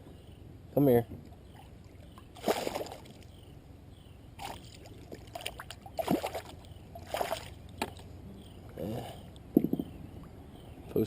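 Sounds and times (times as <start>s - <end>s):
water splashing: 1.5s - 3.3s, 4.4s - 8.1s.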